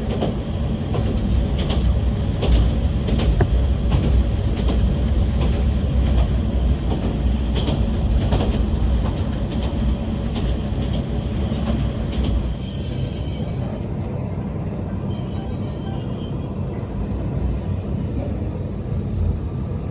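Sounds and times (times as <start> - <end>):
railcar rumbling: 0.0 - 19.9
wheels clicking over rail joints: 0.1 - 12.4.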